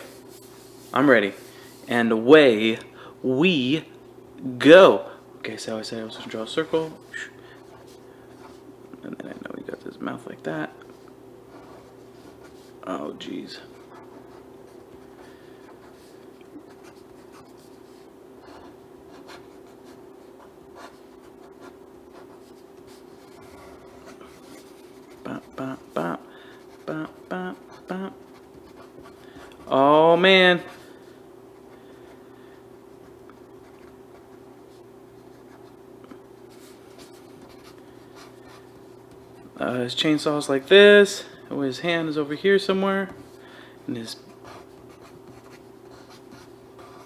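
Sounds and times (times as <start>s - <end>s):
steady low hum: 0.0s - 47.0s
pen scratching on paper: 13.6s - 29.7s, 36.5s - 39.5s, 44.2s - 47.0s.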